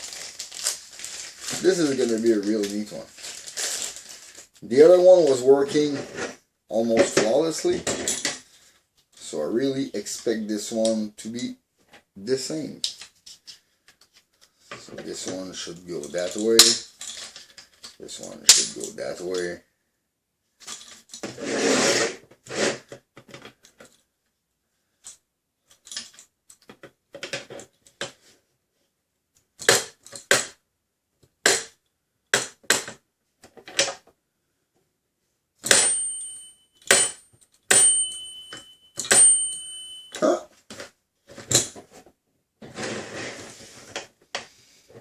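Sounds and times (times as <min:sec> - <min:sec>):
metal target plate ringing: 0:35.6 - 0:40.2.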